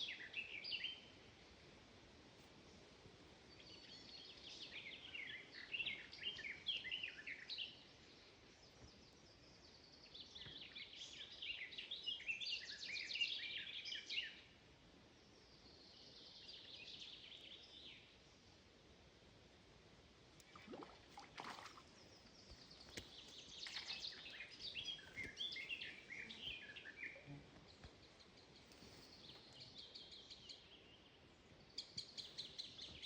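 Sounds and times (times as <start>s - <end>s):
songbird chirping: 0.0s - 1.2s, 2.7s - 18.4s, 20.4s - 33.0s
faint background hiss: 0.0s - 33.0s.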